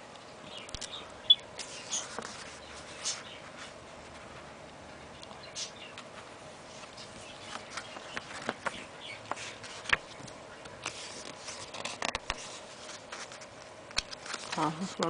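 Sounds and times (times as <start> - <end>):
paper booklet rustling: 1.6 - 4.5, 6.0 - 15.0.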